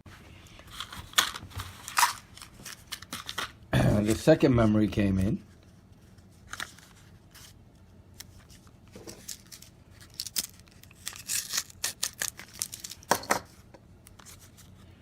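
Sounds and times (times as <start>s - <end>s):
plastic packaging clicks and rustles: 0.6s - 3.6s, 8.2s - 14.8s.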